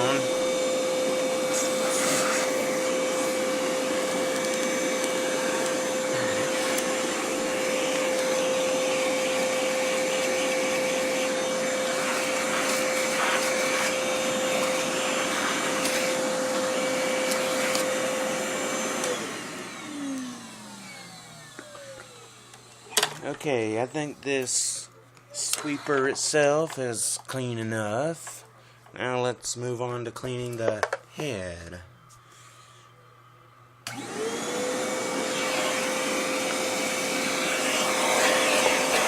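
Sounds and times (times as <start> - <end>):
hand vacuum motor whine: 0.0 - 23.2, 25.4 - 26.2, 33.8 - 39.0.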